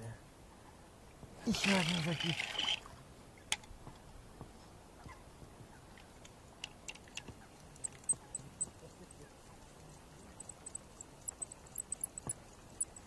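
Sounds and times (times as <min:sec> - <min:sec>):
faint high chirps: 0:07.4 - 0:13.0.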